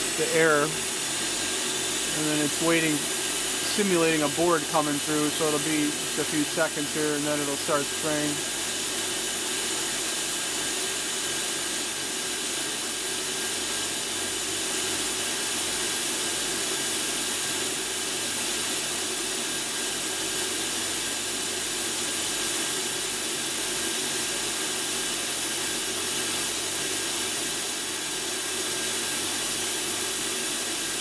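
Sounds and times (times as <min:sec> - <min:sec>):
steady hiss of air: 0:00.0 - 0:12.0.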